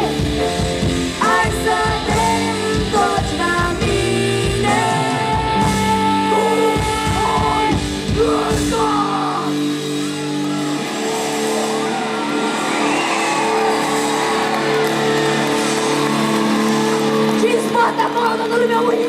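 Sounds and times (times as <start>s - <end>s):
people singing and shouting: 0.0s - 16.6s
live rock band playing: 0.0s - 19.0s.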